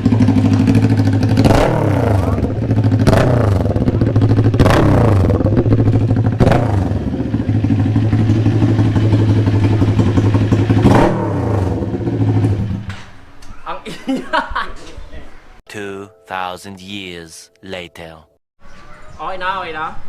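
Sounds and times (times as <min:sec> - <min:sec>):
motorcycle idling: 0:00.0 - 0:12.9.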